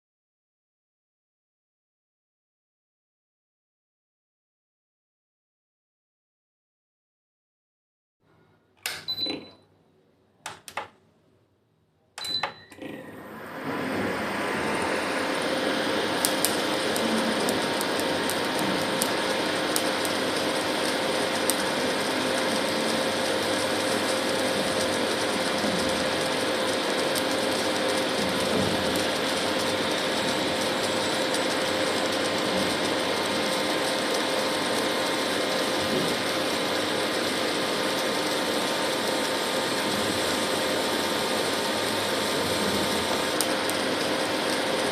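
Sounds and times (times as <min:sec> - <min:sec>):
cooktop switch click: 0:08.8 - 0:09.4
short high beep: 0:12.2 - 0:12.8
cooling fan humming: 0:12.2 - 0:44.9.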